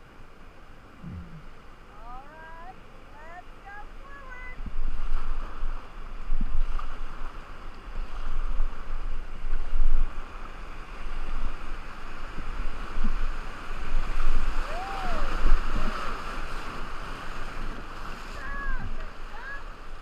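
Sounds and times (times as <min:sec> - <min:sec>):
rushing river water: 0:00.0 - 0:20.0
wind buffeting microphone: 0:04.2 - 0:19.7.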